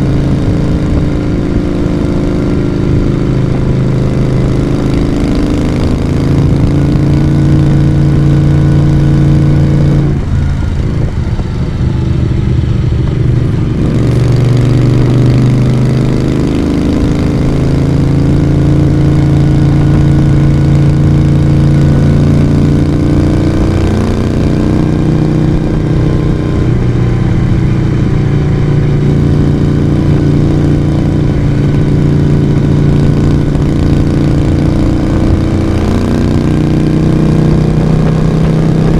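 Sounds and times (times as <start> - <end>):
motorcycle engine and exhaust: 0.0 - 38.9.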